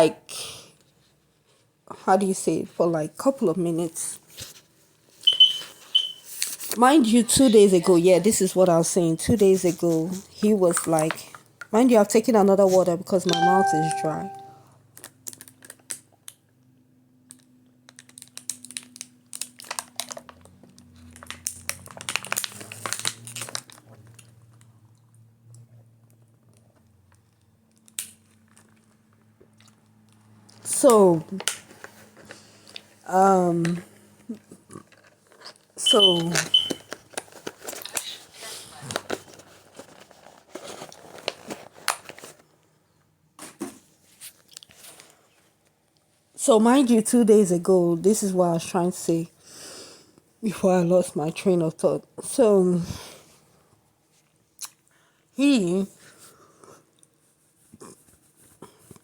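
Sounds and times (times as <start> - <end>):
plastic bottle crinkling and clicking: 17.3 - 24.3, 36.3 - 42.4.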